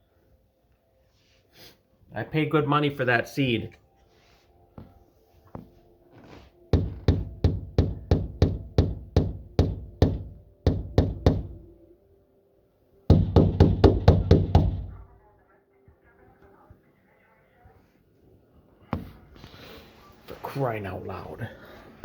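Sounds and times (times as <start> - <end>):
knocking on hard surface: 6.7 - 11.6, 13.1 - 15.0.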